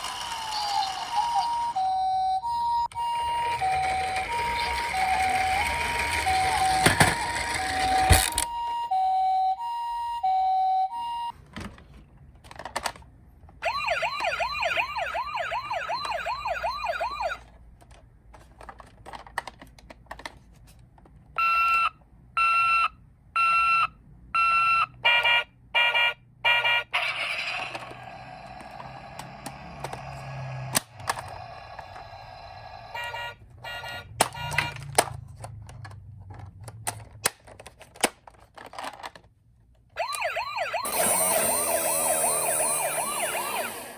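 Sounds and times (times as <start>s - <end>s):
toy ambulance siren: 0.0s - 11.4s, 13.6s - 17.4s, 21.4s - 34.8s, 40.0s - 43.9s.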